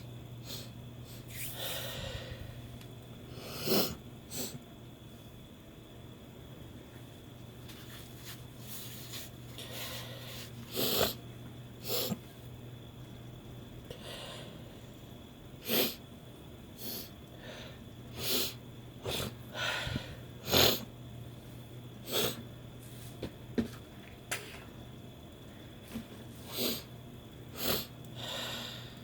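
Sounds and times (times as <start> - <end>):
person sniffing and sneezing: 1.3 - 1.7, 3.4 - 4.6, 10.3 - 11.2, 11.8 - 12.2, 15.6 - 16.0, 16.8 - 17.1, 18.2 - 19.4, 20.4 - 20.9, 22.0 - 22.4, 26.4 - 26.9, 27.5 - 27.9.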